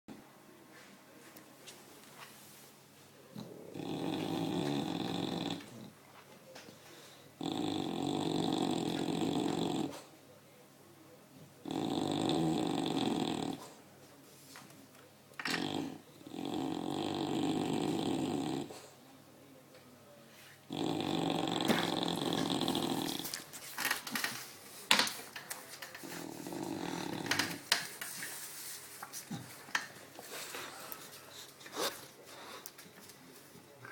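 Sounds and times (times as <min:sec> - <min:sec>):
dog snoring loudly: 0:03.4 - 0:05.9, 0:07.4 - 0:10.0, 0:11.6 - 0:13.8, 0:15.4 - 0:18.9, 0:20.7 - 0:23.4, 0:26.1 - 0:27.7.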